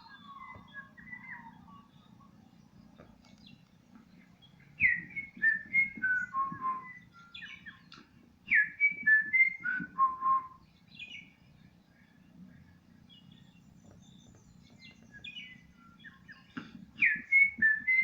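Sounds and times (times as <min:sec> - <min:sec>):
faint bird call: 0:00.0 - 0:02.4
songbird whistled song: 0:00.0 - 0:18.0.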